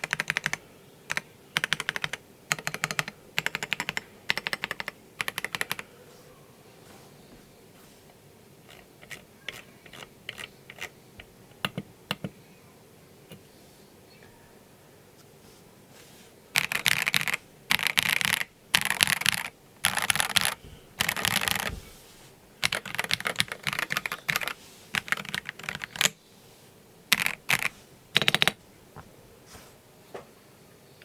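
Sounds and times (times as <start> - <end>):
mechanical keyboard typing: 0.0 - 5.8, 8.6 - 10.9, 16.6 - 21.8, 22.6 - 26.2, 27.1 - 28.6.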